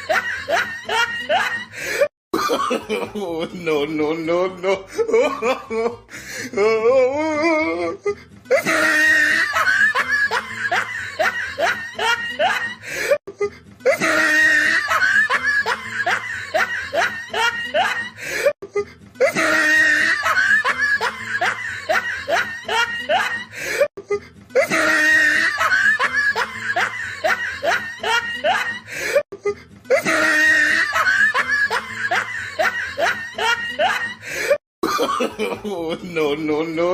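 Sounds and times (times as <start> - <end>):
evil laugh: 0.0 - 3.5, 4.8 - 6.8, 8.5 - 36.0
hoarse breath: 1.7 - 2.1, 6.1 - 6.6, 12.7 - 13.7, 18.1 - 19.0, 23.5 - 24.4, 28.8 - 29.7, 34.2 - 34.6.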